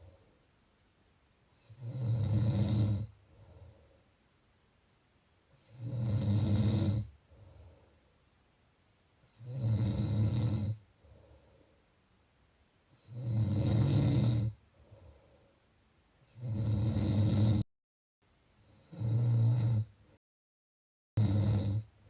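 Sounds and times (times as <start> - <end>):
soft breath: 0.0 - 0.6, 3.1 - 4.4, 7.1 - 8.4, 10.9 - 12.2, 14.6 - 15.8
person snoring: 1.6 - 3.2, 5.6 - 7.1, 9.4 - 10.8, 13.0 - 14.6, 16.3 - 17.7, 18.7 - 19.9, 21.2 - 21.9.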